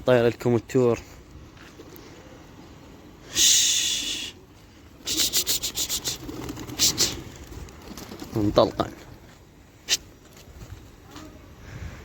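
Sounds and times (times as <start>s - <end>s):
rushing hiss: 3.2s - 4.4s
pigeon wings flapping: 5.0s - 9.0s.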